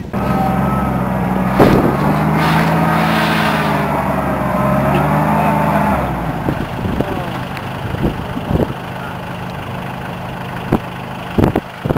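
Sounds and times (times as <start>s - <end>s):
jeep engine running steadily: 0.0s - 11.9s.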